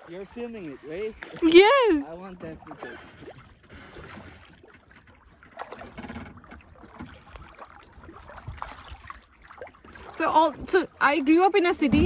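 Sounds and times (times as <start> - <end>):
water lapping around a kayak: 0.0 - 12.0.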